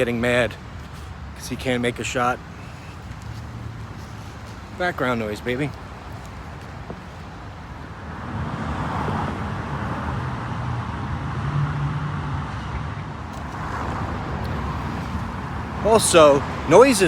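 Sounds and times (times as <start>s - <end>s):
vehicle passing: 0.0s - 17.0s
low engine hum: 9.8s - 17.0s.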